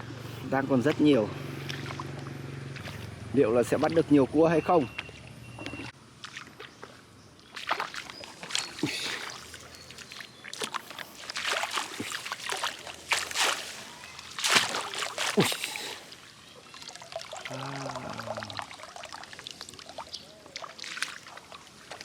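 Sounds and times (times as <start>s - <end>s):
shallow water splashing: 0.1s - 22.0s.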